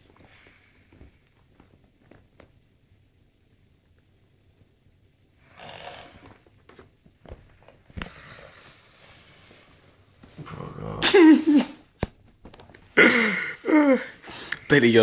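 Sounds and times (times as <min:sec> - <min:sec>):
man snoring heavily: 0:05.5 - 0:06.2.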